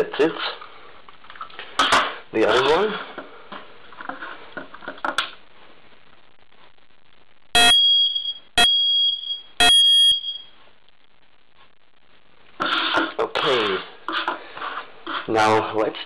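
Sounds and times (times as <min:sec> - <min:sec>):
smoke detector high-pitched beeps: 0:07.6 - 0:10.6.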